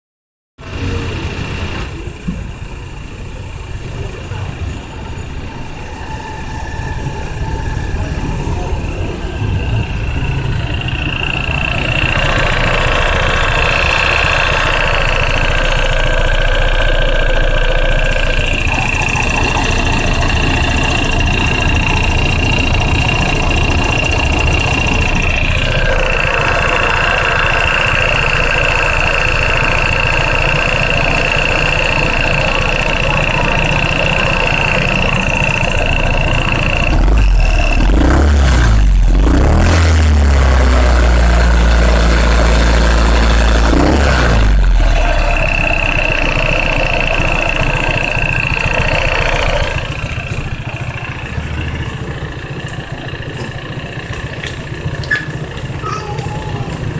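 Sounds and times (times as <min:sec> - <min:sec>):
scooter engine idling: 0:00.6 - 0:56.9.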